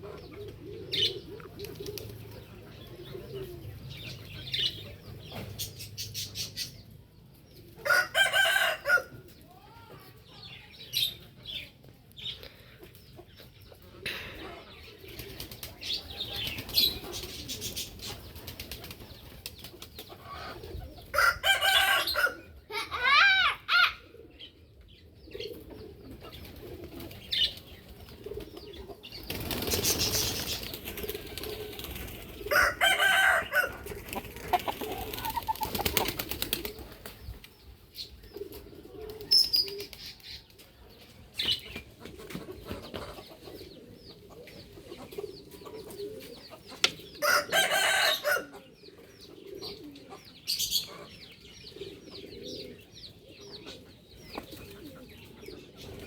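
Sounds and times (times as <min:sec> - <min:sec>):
chickens clucking: 0:00.0 - 0:56.0
rooster crowing: 0:07.8 - 0:09.1, 0:32.5 - 0:33.8, 0:47.2 - 0:48.5
rooster flapping wings: 0:29.3 - 0:32.5, 0:33.7 - 0:37.2.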